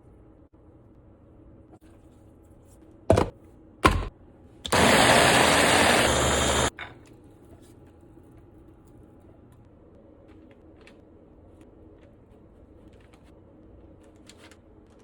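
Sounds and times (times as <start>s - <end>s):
electric blender running: 4.7s - 6.7s.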